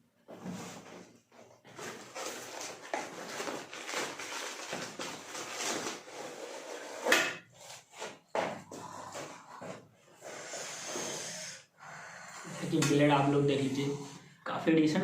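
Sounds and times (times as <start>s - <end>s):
packaging rustling and scraping: 0.3s - 8.4s.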